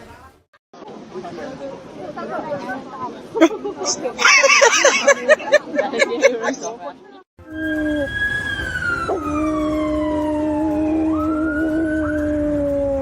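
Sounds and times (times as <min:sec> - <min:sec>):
dog howling: 0:07.4 - 0:13.0
siren wailing: 0:07.4 - 0:13.0.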